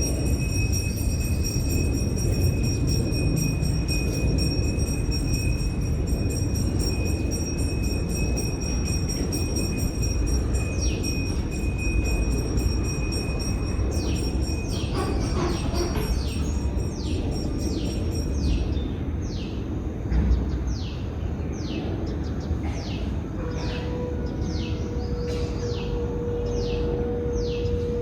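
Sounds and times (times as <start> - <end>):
thin high steady tone: 0.0 - 18.9.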